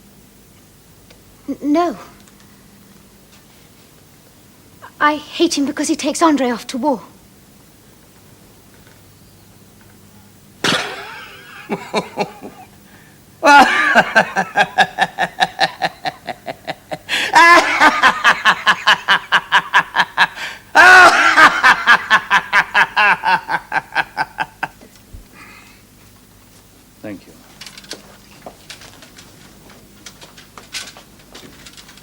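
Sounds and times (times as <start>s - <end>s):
person laughing heartily: 10.6s - 12.8s, 13.4s - 24.8s.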